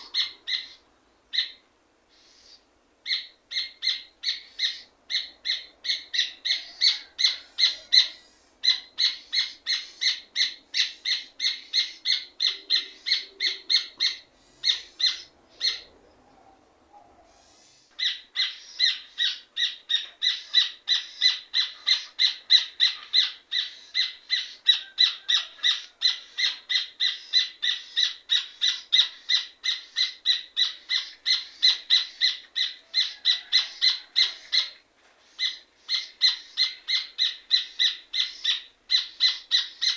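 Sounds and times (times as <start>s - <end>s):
bird singing ringing repeated notes: 3.0s - 6.6s, 7.6s - 16.0s, 35.4s - 39.9s.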